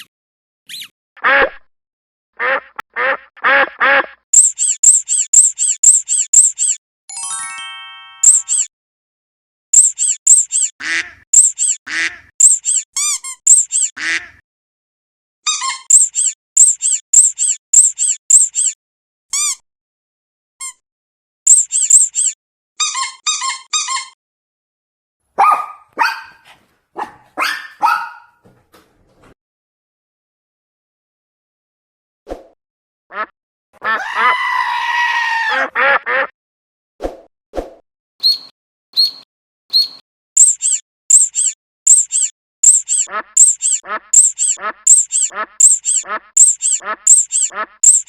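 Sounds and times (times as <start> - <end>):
rubber duck squeaking: 0.7 - 1.6, 2.5 - 6.8, 8.2 - 8.7, 9.8 - 14.4, 15.5 - 19.6, 21.5 - 24.2, 38.2 - 48.0.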